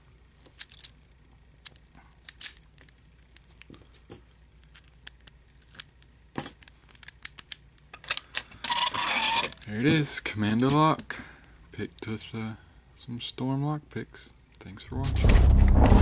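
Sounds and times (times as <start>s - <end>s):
metallic clicks of lock picks: 6.5s - 8.4s.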